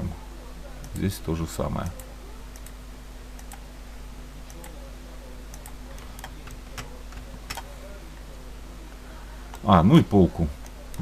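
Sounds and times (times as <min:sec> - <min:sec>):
low electrical hum: 0:00.0 - 0:11.0
computer mouse clicks: 0:01.9 - 0:03.6.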